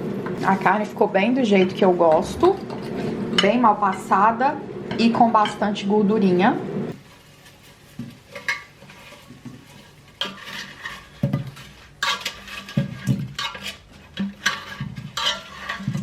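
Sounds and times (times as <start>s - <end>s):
metal utensils clinking on plates: 12.0s - 16.0s.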